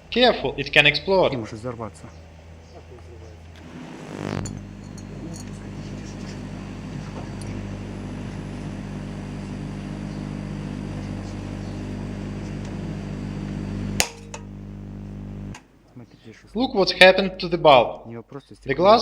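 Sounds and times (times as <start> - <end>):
transformer hum and buzz: 3.4 - 15.6
sharp crack: 13.9 - 14.6.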